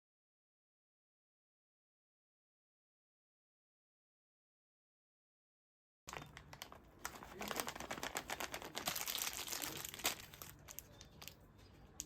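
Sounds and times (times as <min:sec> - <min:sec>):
crinkling and rustling: 0:06.1 - 0:12.0.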